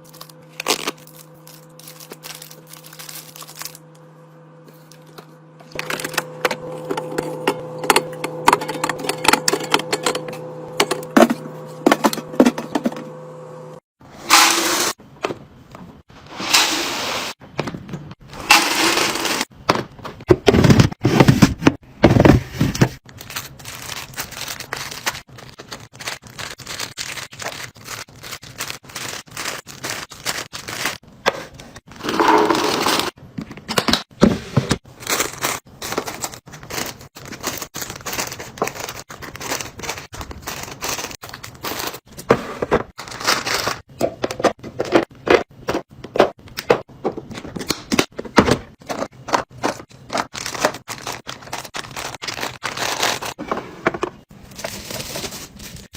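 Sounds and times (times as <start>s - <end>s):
packaging rustling or tearing: 0.0s - 3.8s, 22.6s - 31.7s, 34.9s - 42.1s, 43.0s - 43.8s, 49.6s - 53.4s, 54.4s - 55.9s.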